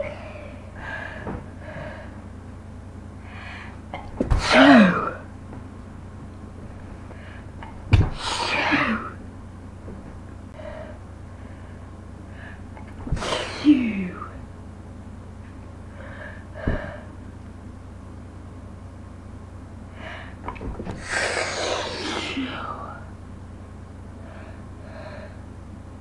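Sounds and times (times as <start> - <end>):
woman sneezing: 4.4 - 5.2, 8.2 - 9.2, 13.1 - 14.3, 21.0 - 22.7.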